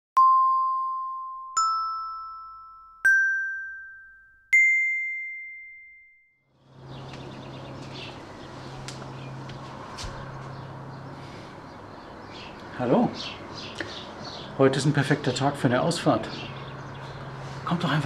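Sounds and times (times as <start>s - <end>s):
bell-like intro chime: 0.2s - 6.4s
bird chirps: 6.5s - 17.7s.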